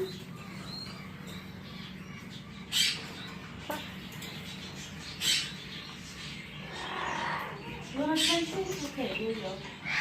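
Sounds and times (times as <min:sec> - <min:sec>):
parrot squawk: 0:06.6 - 0:08.3.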